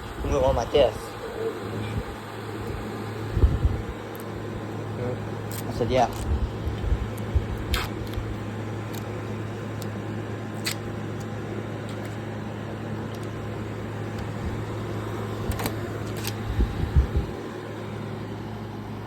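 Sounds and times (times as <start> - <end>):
air conditioner humming: 0.0 - 19.0
fan blowing air: 0.0 - 19.0.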